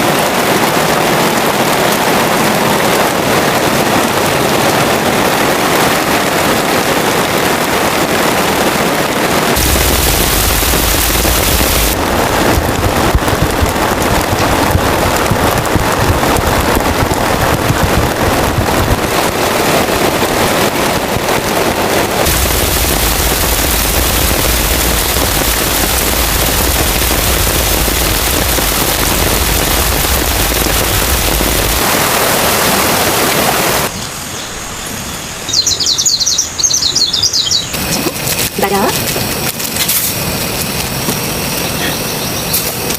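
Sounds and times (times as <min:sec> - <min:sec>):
heavy rain pouring: 0:00.0 - 0:42.9
low rumble: 0:09.4 - 0:35.0.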